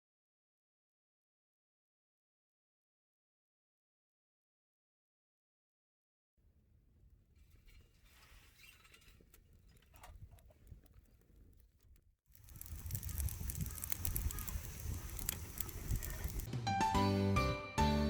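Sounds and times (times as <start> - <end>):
wood fire crackling and popping: 6.7 - 16.5.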